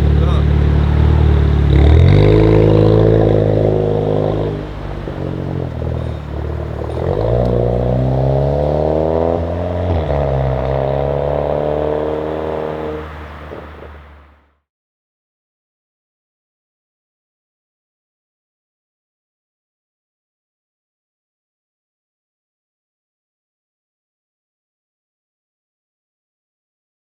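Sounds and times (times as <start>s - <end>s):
car engine accelerating hard: 0.0s - 14.5s.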